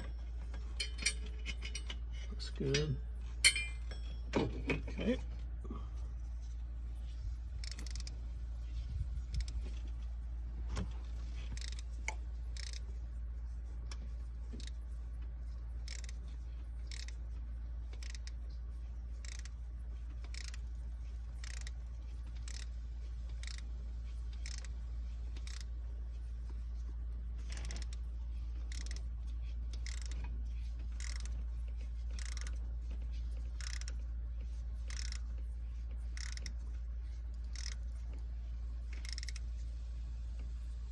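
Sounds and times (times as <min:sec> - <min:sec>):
steady low hum: 0:00.0 - 0:40.9
sharp metallic clicks: 0:11.5 - 0:12.9, 0:13.9 - 0:17.2, 0:19.1 - 0:25.7, 0:27.4 - 0:39.5.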